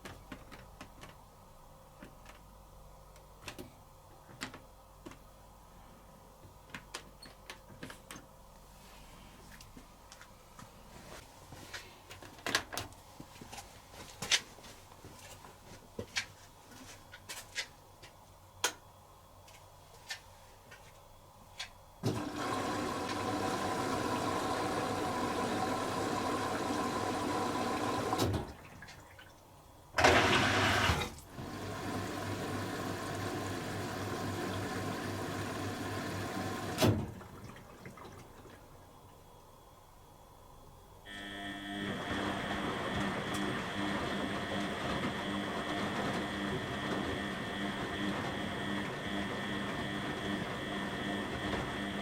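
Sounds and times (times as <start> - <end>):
water rushing into washing machine: 22.0 - 29.4, 30.0 - 38.9.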